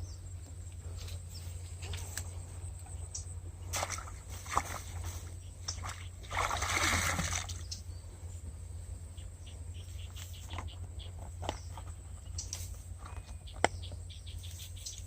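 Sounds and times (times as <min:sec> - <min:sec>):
water splash: 0:03.7 - 0:07.6.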